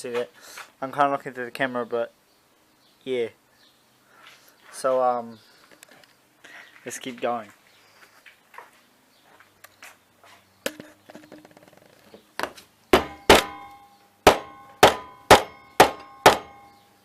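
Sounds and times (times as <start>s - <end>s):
hammer striking phone: 12.4s - 16.8s.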